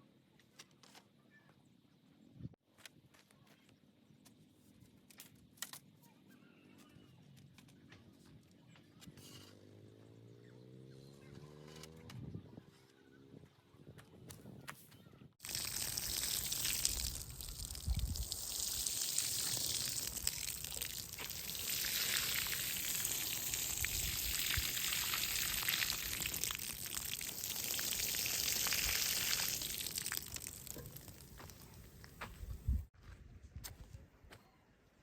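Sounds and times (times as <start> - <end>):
running water hiss: 15.4 - 32.6.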